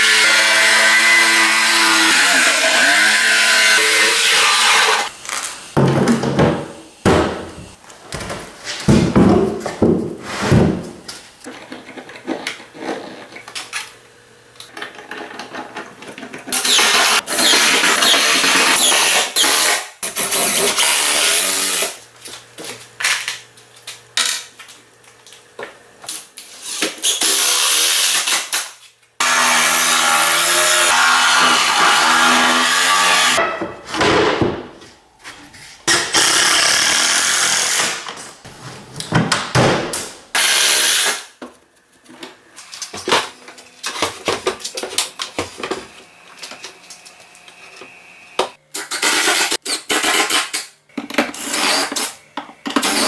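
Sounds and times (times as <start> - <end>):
power tool cutting wood: 0.0 - 7.8, 16.5 - 22.0, 29.2 - 33.4, 35.9 - 38.2, 40.3 - 41.3.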